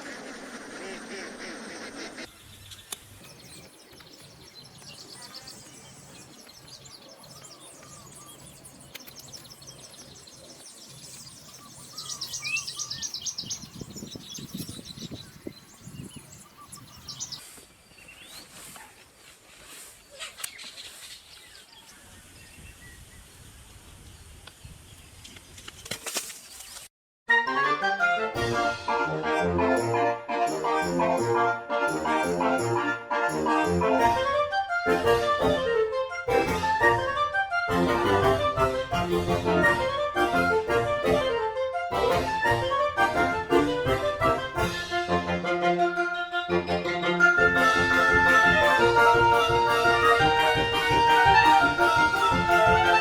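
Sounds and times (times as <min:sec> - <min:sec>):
small birds chirping and trilling: 0:00.0 - 0:18.8, 0:19.8 - 0:25.6.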